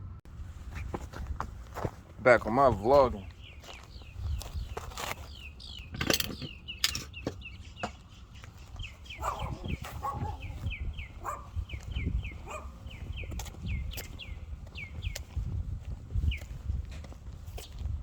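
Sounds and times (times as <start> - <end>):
bird chirping: 2.4 - 15.4
knocks and rustling: 4.4 - 8.1.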